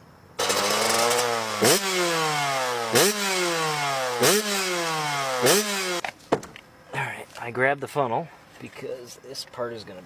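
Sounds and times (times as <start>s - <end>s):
small motorbike engine revving: 0.4s - 6.1s.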